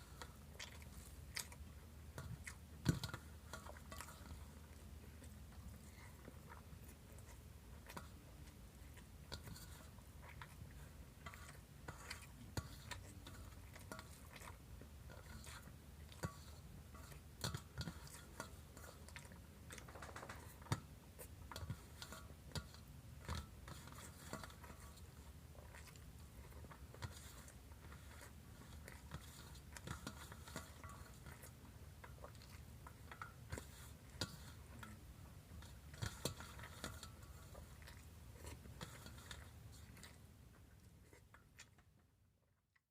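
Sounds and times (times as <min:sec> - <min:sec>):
person chewing: 0:23.2 - 0:42.0.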